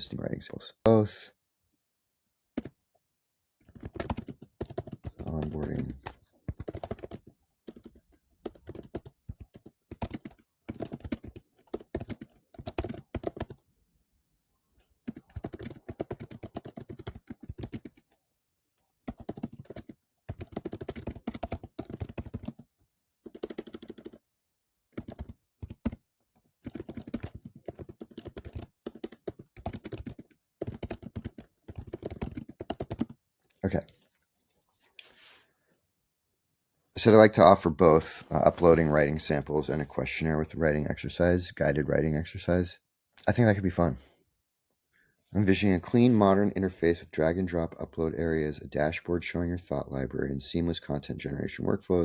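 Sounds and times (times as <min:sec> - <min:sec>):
computer keyboard typing: 0:02.6 - 0:02.8, 0:03.6 - 0:13.6, 0:15.0 - 0:18.2, 0:19.0 - 0:24.2, 0:25.0 - 0:26.0, 0:26.6 - 0:33.2.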